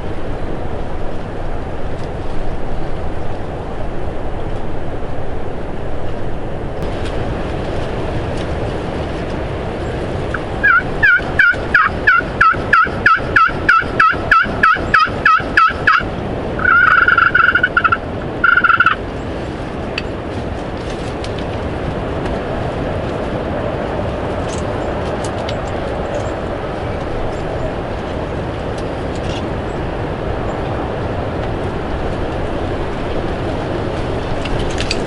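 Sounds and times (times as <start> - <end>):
wind buffeting microphone: 0.0 - 35.0
turkey yelps: 10.6 - 16.0, 16.6 - 19.0.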